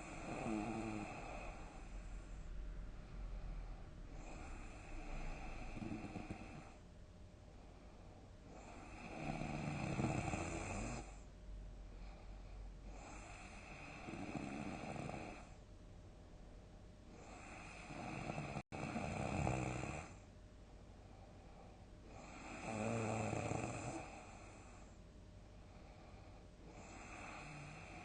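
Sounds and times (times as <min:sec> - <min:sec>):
person snoring loudly: 0:00.0 - 0:01.8, 0:04.2 - 0:06.8, 0:08.6 - 0:11.1, 0:13.0 - 0:15.5, 0:17.2 - 0:20.2, 0:22.2 - 0:24.3.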